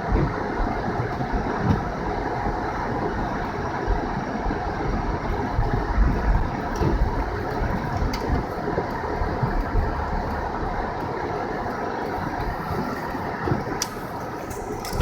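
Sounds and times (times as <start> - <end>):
car driving on snowy road: 0.0 - 15.0.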